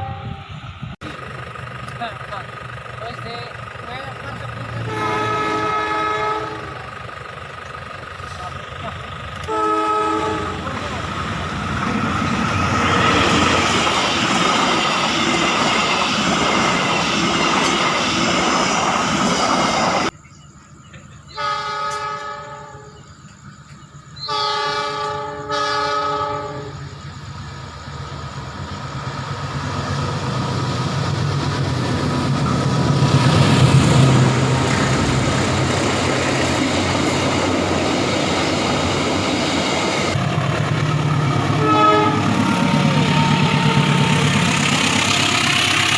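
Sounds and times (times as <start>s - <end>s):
locomotive horn blasts: 0.0s - 0.6s, 4.8s - 7.0s, 9.4s - 10.8s, 21.3s - 23.1s, 24.2s - 26.9s, 41.6s - 42.5s
locomotive engine rumble: 0.0s - 45.9s
train rail noise: 0.0s - 45.9s.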